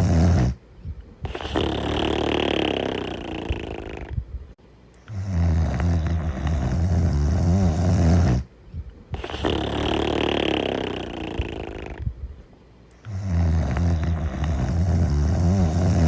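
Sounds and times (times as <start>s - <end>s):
low buzzing snore: 0.0s - 0.6s, 1.2s - 4.2s, 5.0s - 8.5s, 9.1s - 12.2s, 12.9s - 16.0s
breathy hissing breath: 12.9s - 16.0s.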